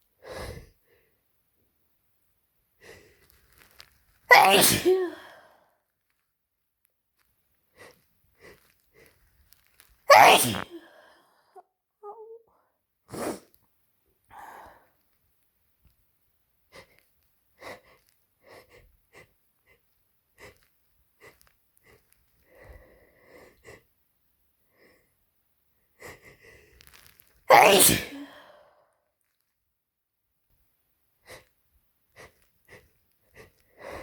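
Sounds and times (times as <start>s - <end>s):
person sneezing: 4.3s - 5.4s, 10.1s - 10.9s, 13.1s - 13.5s, 27.5s - 28.6s.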